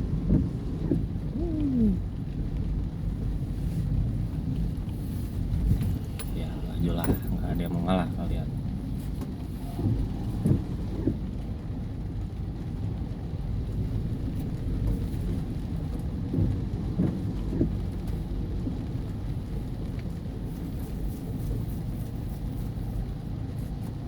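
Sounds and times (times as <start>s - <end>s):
heavy rain drumming on car roof: 0.0s - 24.0s.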